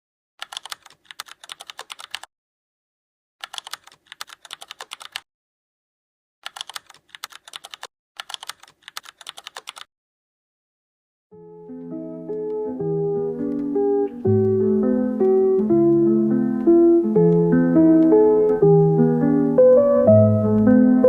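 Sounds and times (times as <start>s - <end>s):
keyboard typing clicks: 0.4s - 2.3s, 3.4s - 5.2s, 6.4s - 9.9s, 13.4s - 14.6s, 15.2s - 18.9s.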